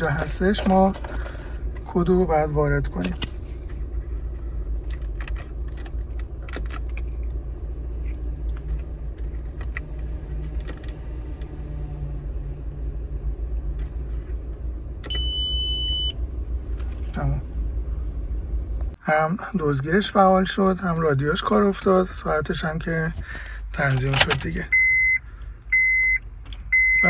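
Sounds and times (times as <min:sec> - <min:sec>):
steady low rumble: 0:00.0 - 0:25.7
steady high beep: 0:26.8 - 0:27.0.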